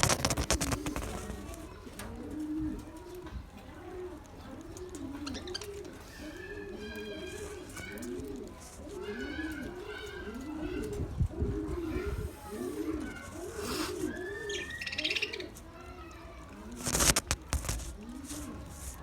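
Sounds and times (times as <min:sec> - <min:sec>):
pigeons cooing: 0:00.0 - 0:15.7, 0:16.3 - 0:19.0
budgerigar chirps and chatter: 0:04.4 - 0:11.0, 0:11.8 - 0:18.8.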